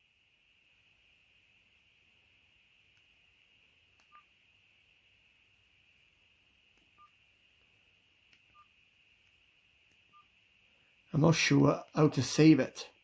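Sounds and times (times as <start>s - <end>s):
phone keypad beeps: 4.1s - 4.3s, 7.0s - 7.2s, 8.5s - 8.7s.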